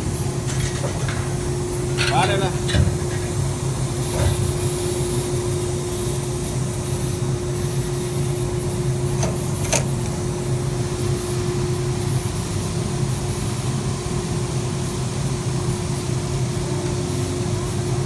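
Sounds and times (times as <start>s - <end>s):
machine humming: 0.0s - 12.9s.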